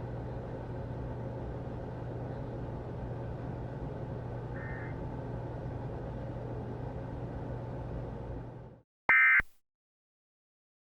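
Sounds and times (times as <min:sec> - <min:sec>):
low hum from receiver: 0:00.0 - 0:09.5
faint short tone burst: 0:09.1 - 0:09.5
radio hiss: 0:09.1 - 0:09.5.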